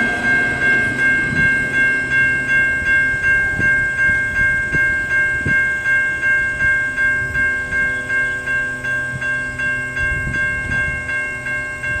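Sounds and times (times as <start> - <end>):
crossing bell ringing: 0.0 - 12.0
freight train cars rumbling: 0.0 - 12.0.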